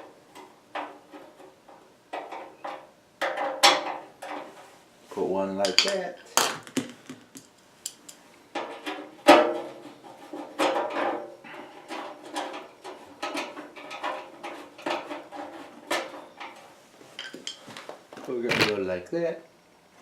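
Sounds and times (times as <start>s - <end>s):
metal tools clinking and knocking: 5.6s - 6.5s, 17.2s - 17.7s.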